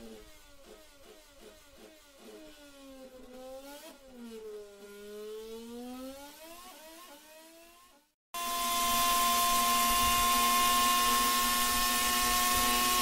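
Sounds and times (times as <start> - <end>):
racing engine revving: 0.0 - 8.0.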